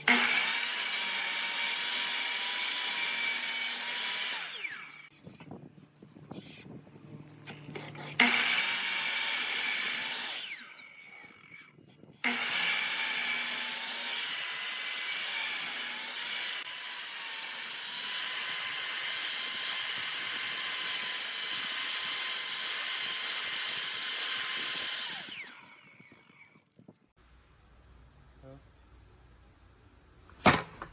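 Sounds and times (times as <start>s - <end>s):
power tool cutting wood: 0.0s - 5.1s, 7.5s - 26.6s.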